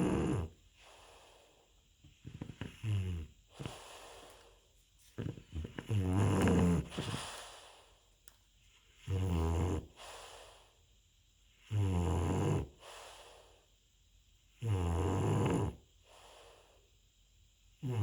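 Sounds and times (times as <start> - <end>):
dog snoring: 0.0 - 1.1, 2.1 - 4.2, 5.1 - 7.6, 9.0 - 10.6, 11.6 - 13.3, 14.5 - 16.5, 17.8 - 18.0.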